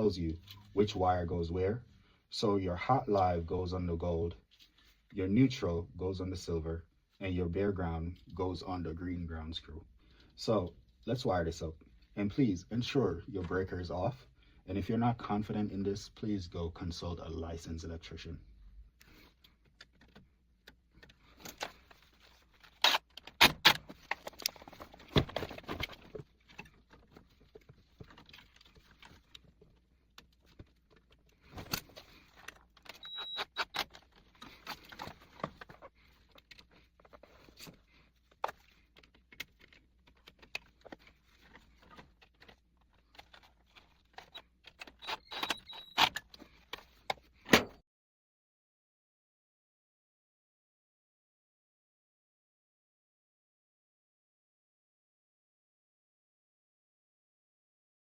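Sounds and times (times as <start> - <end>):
clicks and scrapes of handling: 19.0 - 47.5.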